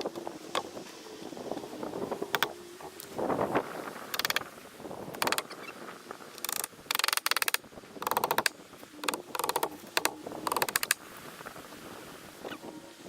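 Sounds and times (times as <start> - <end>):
rapid mechanical clicking: 4.1 - 4.5, 5.1 - 5.5, 6.4 - 11.0.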